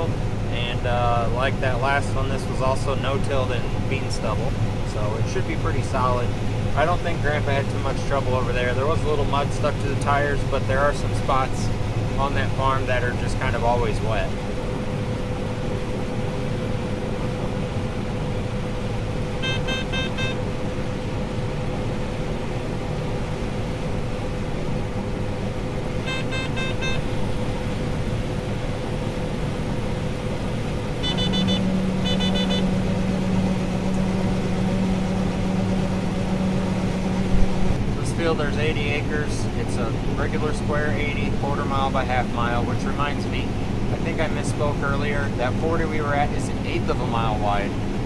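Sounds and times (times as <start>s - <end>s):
engine and machinery hum: 0.0s - 48.0s
low steady tone: 13.0s - 38.0s
rapid electronic warning beeps: 19.4s - 20.4s, 26.0s - 27.1s, 31.0s - 32.8s.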